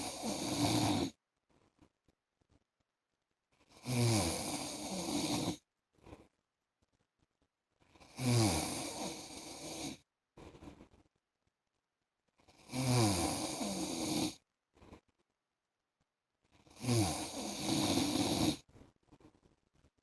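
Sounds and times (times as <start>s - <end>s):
man snoring: 0.0s - 1.2s, 3.8s - 5.6s, 8.1s - 10.0s, 12.6s - 14.4s, 16.7s - 18.6s.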